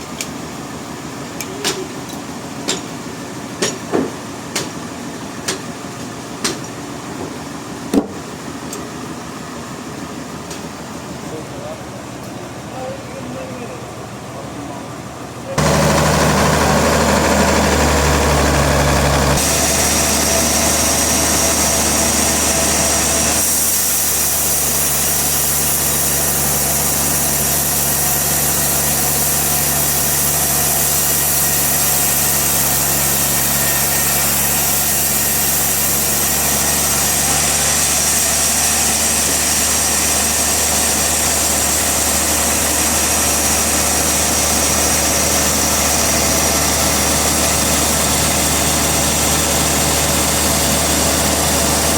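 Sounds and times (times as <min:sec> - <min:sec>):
engine hum: 0:00.0 - 0:51.9
sawmill machinery running: 0:00.0 - 0:51.9.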